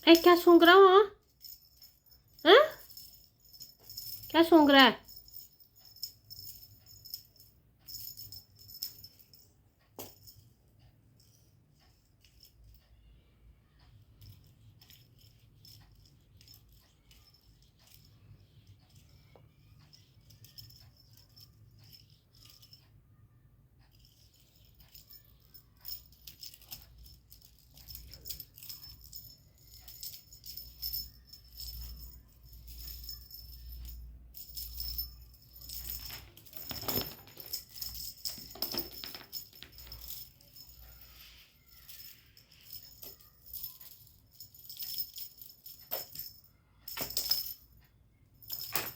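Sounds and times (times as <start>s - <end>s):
rattling and jingling: 0.0s - 10.6s, 24.0s - 47.8s, 48.4s - 48.9s.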